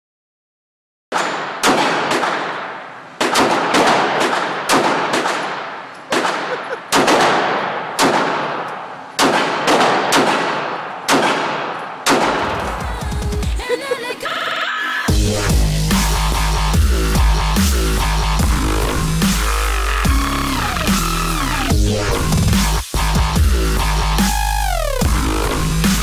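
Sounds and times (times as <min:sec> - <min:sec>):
handgun shots echoing: 0:01.1 - 0:12.8.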